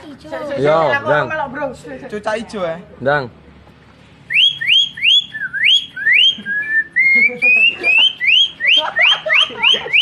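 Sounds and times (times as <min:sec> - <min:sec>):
person whistling birdsong: 0:04.3 - 0:08.8.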